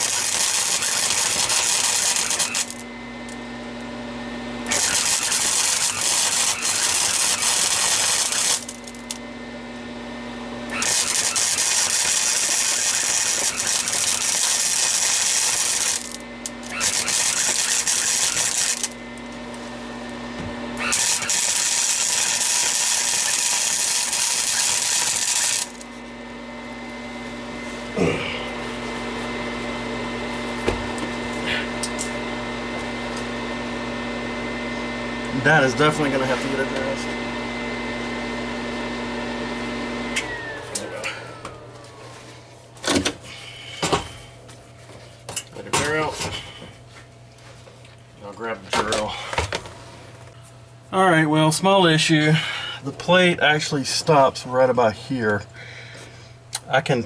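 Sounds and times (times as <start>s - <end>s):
welding arc crackling: 0.0s - 3.4s, 4.6s - 9.3s, 10.7s - 19.2s, 20.7s - 26.0s
steady hum: 0.0s - 57.0s.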